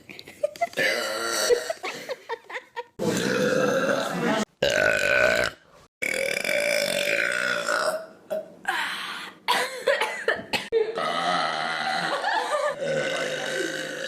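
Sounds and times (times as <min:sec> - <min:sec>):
person burping: 0:00.8 - 0:01.8, 0:03.0 - 0:08.5, 0:10.9 - 0:14.0.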